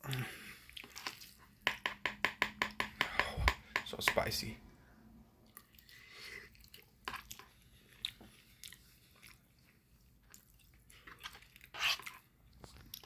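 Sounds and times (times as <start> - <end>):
person chewing food: 0.0 - 1.9, 5.4 - 13.0.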